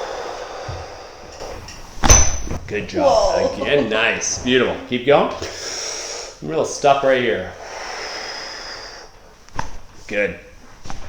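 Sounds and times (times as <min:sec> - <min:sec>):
person breathing out slowly: 0:00.0 - 0:01.7, 0:07.6 - 0:09.2.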